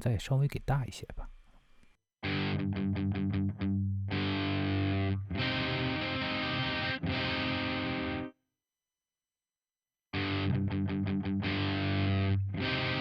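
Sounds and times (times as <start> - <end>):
distorted electric guitar: 2.2 - 8.3, 10.2 - 13.0.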